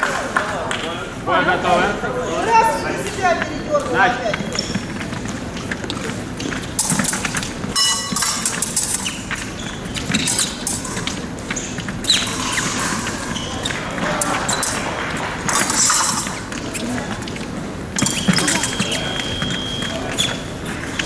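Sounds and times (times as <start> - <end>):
fencers' footsteps and stamps: 3.1 - 21.0
ringing metallic tone: 7.8 - 8.8.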